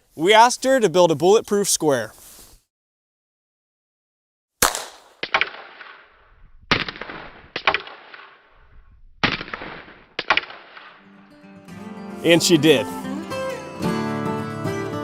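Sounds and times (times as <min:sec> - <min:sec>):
gunshots with echo: 0:04.6 - 0:08.5, 0:09.2 - 0:11.1.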